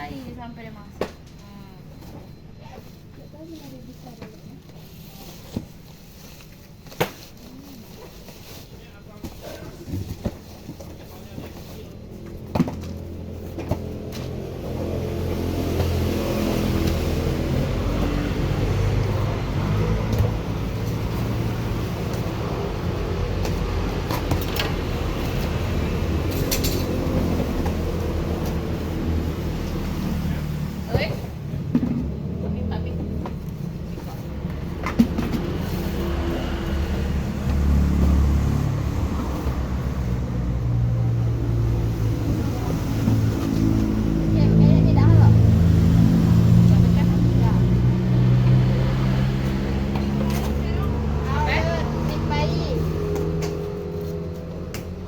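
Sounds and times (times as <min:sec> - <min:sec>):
vehicle engine running: 0:09.9 - 0:55.0.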